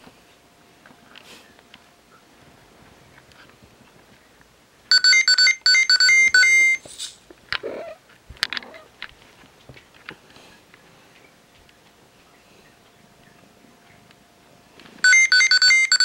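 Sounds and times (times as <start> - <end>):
electronic beeping jingle: 4.9 - 6.8, 15.0 - 16.0.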